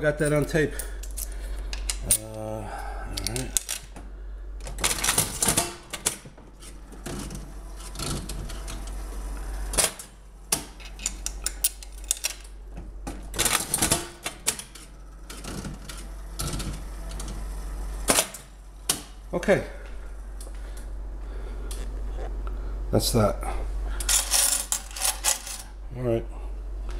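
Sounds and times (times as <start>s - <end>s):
slot machine reels rattling: 24.1s - 25.7s.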